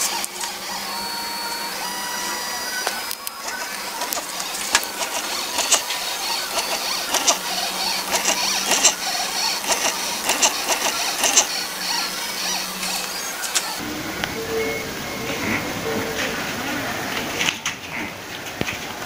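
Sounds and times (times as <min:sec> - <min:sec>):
stepper motors whirring and whining: 0:00.0 - 0:16.5
irregular mechanical clicks: 0:02.8 - 0:13.8.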